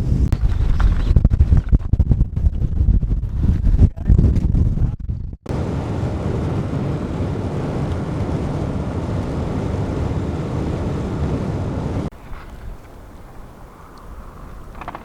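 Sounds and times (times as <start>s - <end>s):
car road and engine noise: 5.5s - 15.0s.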